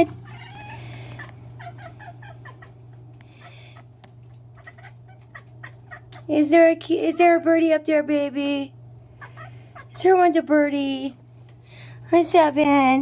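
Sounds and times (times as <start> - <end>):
cat chirping: 0.2 - 2.8.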